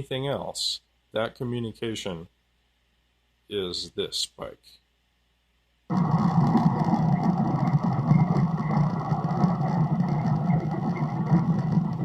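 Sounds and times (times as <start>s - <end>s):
loud rumbling hum: 5.9s - 12.0s.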